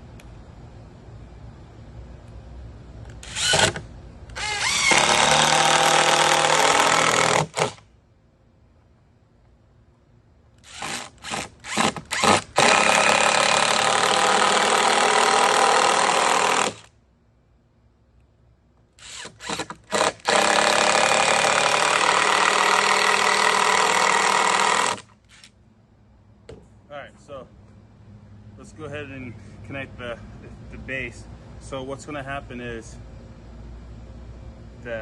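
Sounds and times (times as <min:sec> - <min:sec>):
power drill driving screws: 0:03.2 - 0:07.8, 0:10.6 - 0:16.9, 0:19.0 - 0:25.5.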